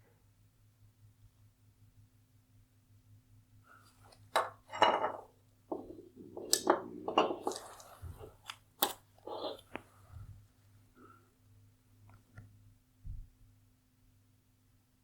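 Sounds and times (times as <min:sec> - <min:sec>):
parts knocking on hard surface: 0:04.4 - 0:08.3.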